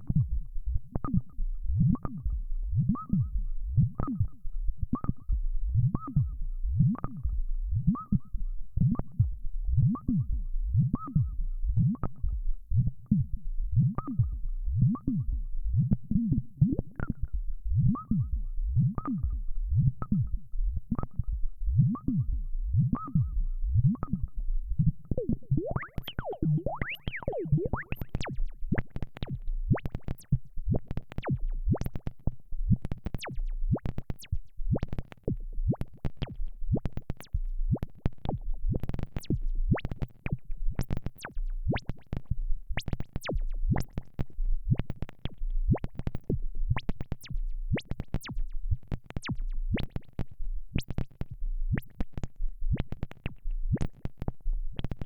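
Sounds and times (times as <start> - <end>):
low bass pulse: 0.0 - 29.8, 30.4 - 31.8, 34.6 - 39.8, 42.4 - 44.8, 45.4 - 47.8
synthesizer sequenced percussive notes: 16.7 - 55.0.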